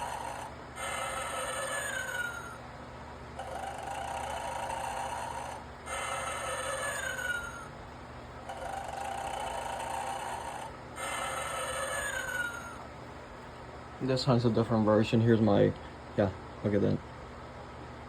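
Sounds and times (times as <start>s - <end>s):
toy raspy snore: 0.0s - 2.6s, 3.4s - 7.7s, 8.4s - 12.9s.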